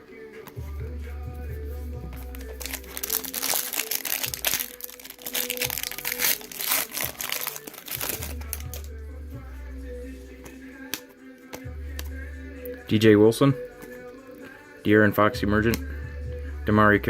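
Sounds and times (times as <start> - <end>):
background music with low bass: 0.0 - 17.0
foil wrapper crinkling and tearing: 2.2 - 8.9.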